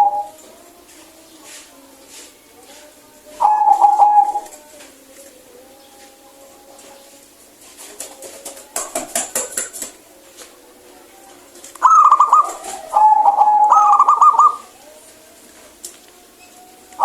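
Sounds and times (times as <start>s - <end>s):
dove cooing trilled call: 0.0s - 0.5s, 3.3s - 4.7s, 11.4s - 17.0s
faint background cooing: 0.0s - 17.0s.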